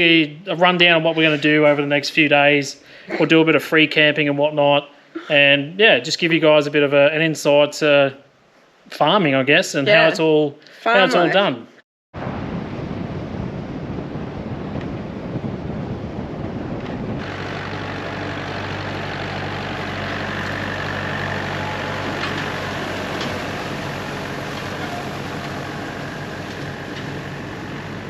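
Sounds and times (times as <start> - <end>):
tractor diesel engine: 17.1 - 28.0.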